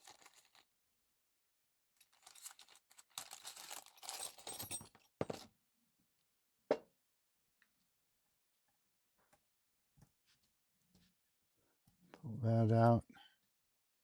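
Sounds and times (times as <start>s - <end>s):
crinkling and scraping of parts: 2.0s - 5.5s.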